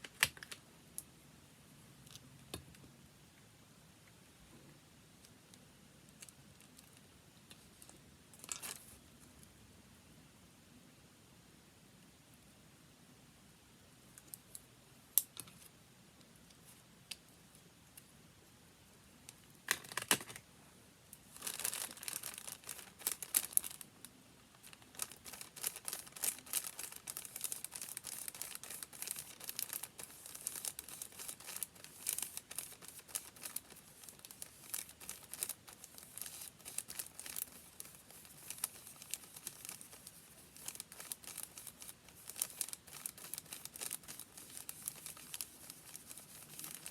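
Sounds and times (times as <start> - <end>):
paper crinkling: 21.3 - 23.9, 24.5 - 46.9.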